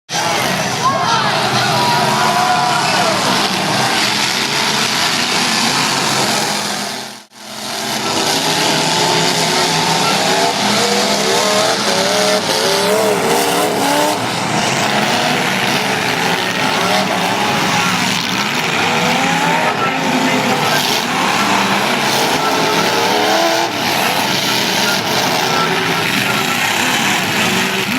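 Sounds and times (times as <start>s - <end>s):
car engines revving: 0.1s - 27.9s
tires squealing: 0.1s - 27.9s.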